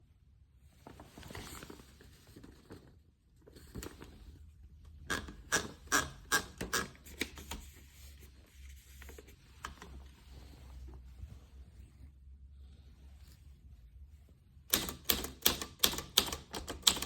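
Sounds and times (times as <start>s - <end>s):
typewriter keys clacking: 14.7s - 17.0s.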